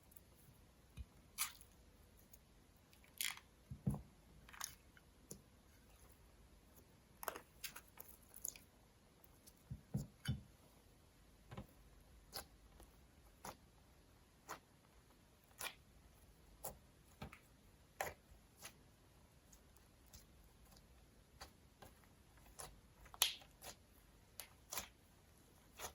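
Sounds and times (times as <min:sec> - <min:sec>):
slime squelching: 0:12.2 - 0:25.9
slime clicking and popping: 0:23.1 - 0:23.7.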